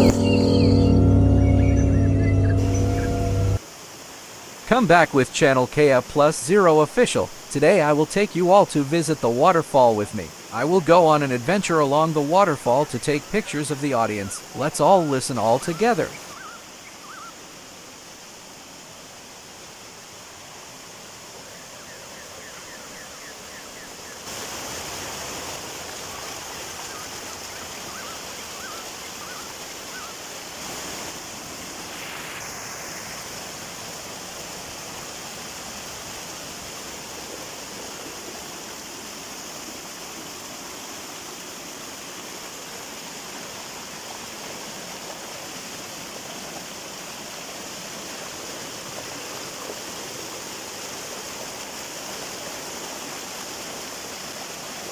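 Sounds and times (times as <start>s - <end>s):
waterfall rushing: 0.0s - 16.4s.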